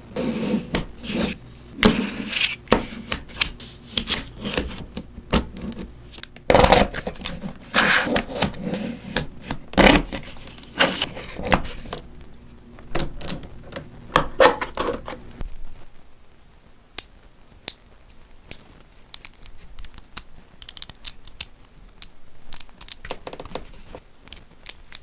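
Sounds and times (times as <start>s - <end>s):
magnetic balls clicking together: 18.4s - 23.6s.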